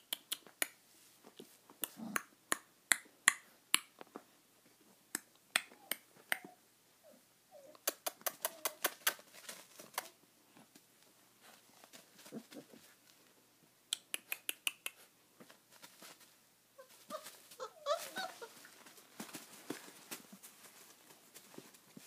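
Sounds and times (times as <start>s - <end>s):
puppy whimpering: 16.8s - 18.6s.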